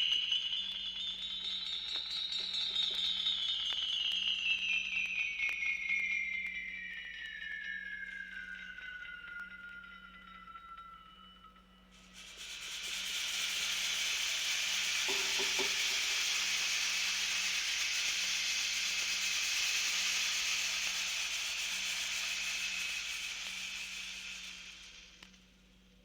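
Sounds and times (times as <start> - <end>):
sizzling hiss: 11.9 - 26.0.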